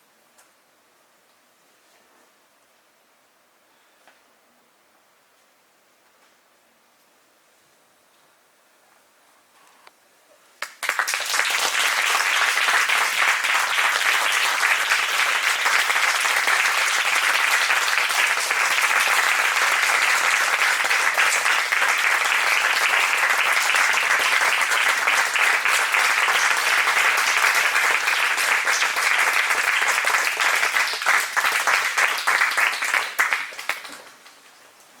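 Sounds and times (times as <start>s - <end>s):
audience applauding: 10.6s - 34.1s.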